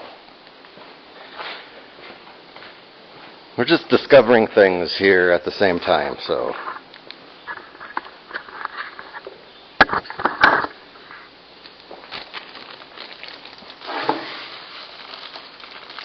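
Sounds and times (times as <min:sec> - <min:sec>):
rustling: 0:10.0 - 0:16.0.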